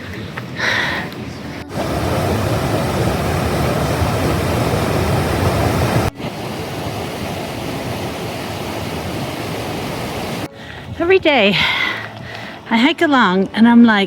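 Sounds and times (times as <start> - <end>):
river water rushing over rapids: 1.7 - 10.5.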